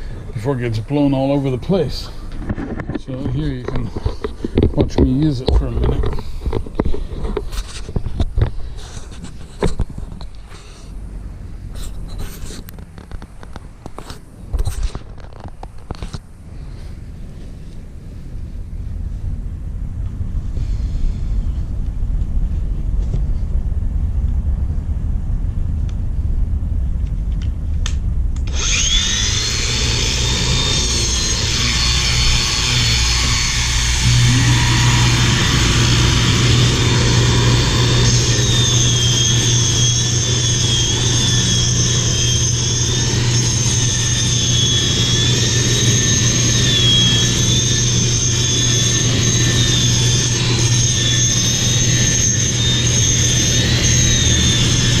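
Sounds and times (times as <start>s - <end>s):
low rumble: 17.8s - 55.0s
deeper hum: 18.8s - 55.0s
angle grinder whine on concrete: 28.5s - 55.0s.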